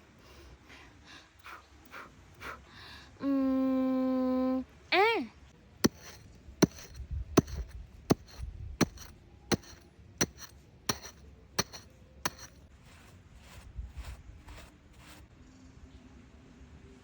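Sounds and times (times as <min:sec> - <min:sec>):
hand tool striking with metallic ring: 0:05.8 - 0:12.6.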